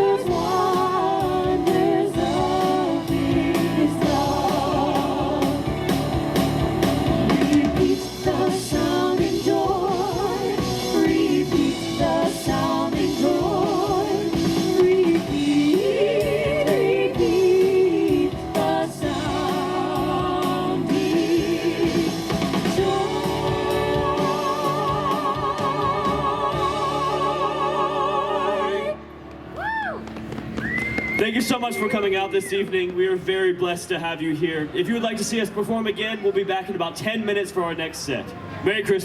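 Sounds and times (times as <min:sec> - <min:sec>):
singers performing a carol: 0:00.0 - 0:29.4.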